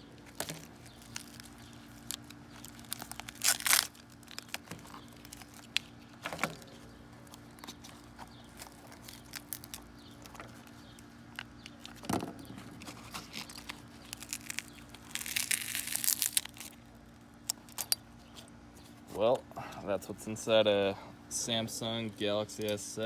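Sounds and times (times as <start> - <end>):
steady low hum: 0.0 - 23.0
small clicks and crinkling: 0.2 - 18.5.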